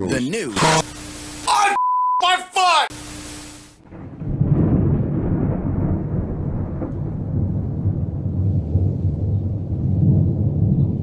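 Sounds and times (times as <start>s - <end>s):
rolling thunder rumble: 3.8s - 11.0s.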